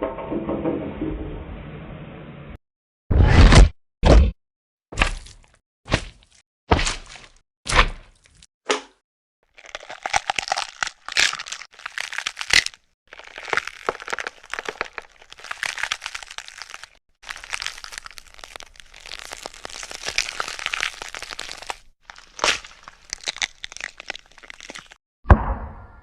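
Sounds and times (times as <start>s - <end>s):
crunching and cracking eating: 9.5s - 25.0s.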